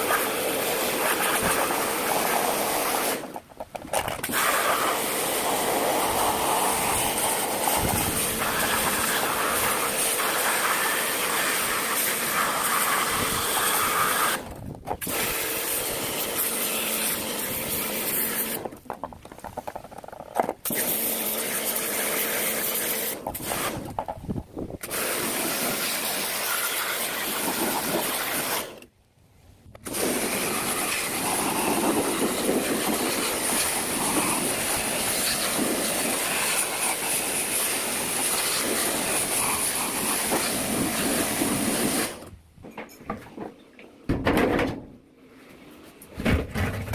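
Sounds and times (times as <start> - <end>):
loud steady hissing: 0.0 - 3.4, 4.2 - 18.8, 29.9 - 42.3.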